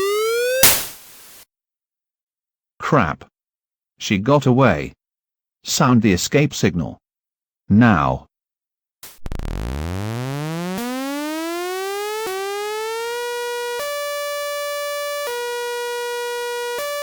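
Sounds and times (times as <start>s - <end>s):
electronic siren wailing: 0.0s - 1.0s, 9.0s - 17.0s.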